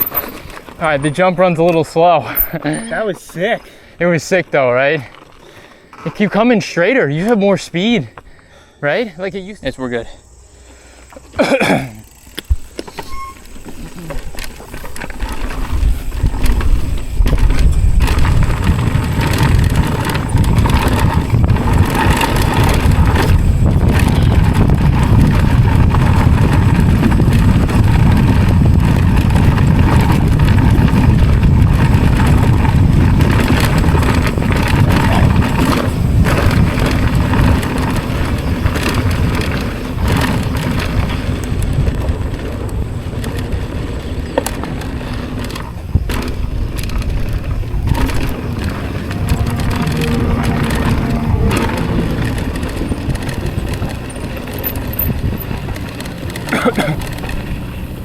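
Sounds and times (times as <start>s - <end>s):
bike rattling and knocking: 0.0s - 3.6s, 11.2s - 58.0s
tyres crunching over dirt and rock: 11.1s - 57.9s
wind rumble on microphone: 14.0s - 58.0s.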